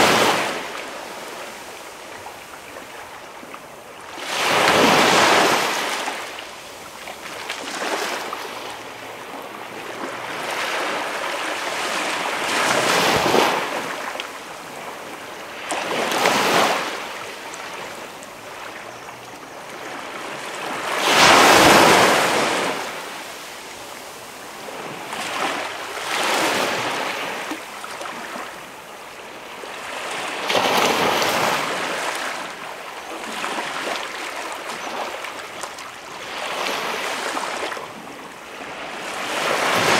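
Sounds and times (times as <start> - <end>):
waves washing onto beach: 0.0 - 39.9.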